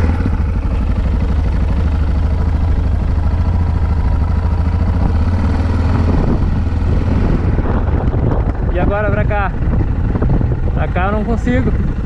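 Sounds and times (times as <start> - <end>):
motorcycle engine running: 0.0 - 12.0.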